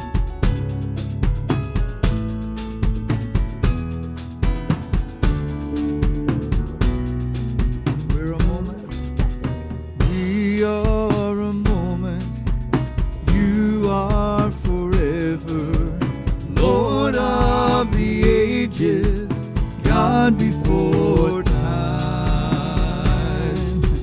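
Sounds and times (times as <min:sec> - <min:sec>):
drums: 0:00.0 - 0:24.0
live band playing: 0:03.2 - 0:10.3
person singing: 0:13.4 - 0:24.0.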